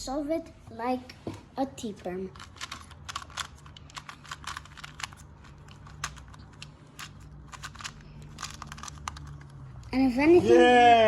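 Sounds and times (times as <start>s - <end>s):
plastic puzzle cube clicks: 2.4s - 9.4s.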